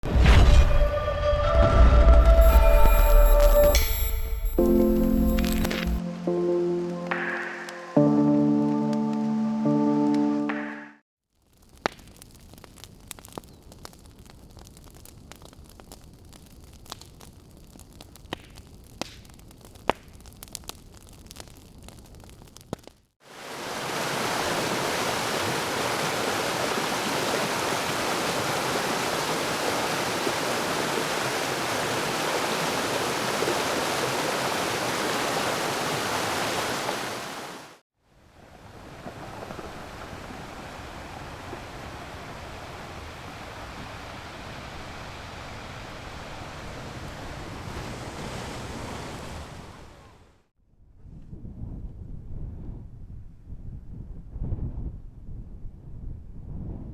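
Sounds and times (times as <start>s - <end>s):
brief crackle: 11.4s - 23.1s.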